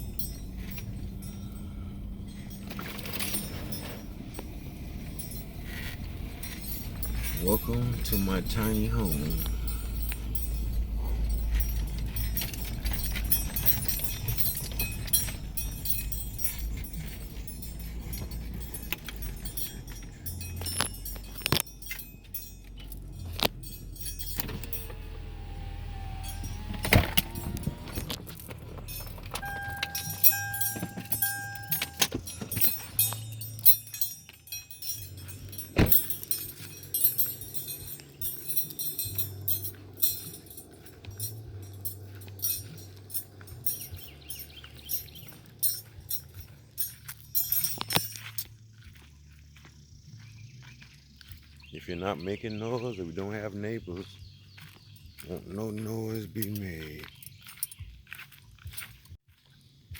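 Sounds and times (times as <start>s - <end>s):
keys jangling: 0.0s - 49.1s, 54.0s - 59.2s
vehicle engine rumble: 0.0s - 59.9s
steady electronic beep: 29.4s - 32.1s.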